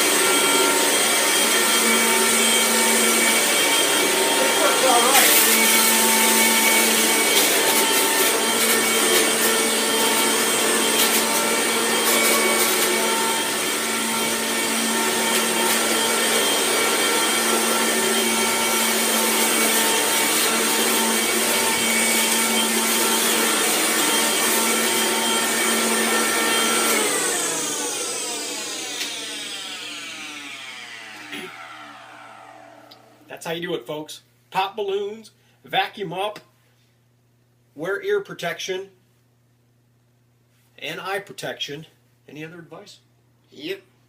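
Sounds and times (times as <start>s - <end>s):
vacuum cleaner motor whine: 0.0s - 33.3s.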